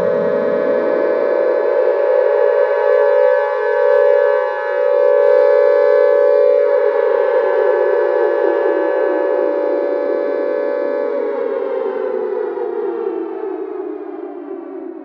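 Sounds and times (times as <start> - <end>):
loud siren-like creature blare: 0.0 - 2.6.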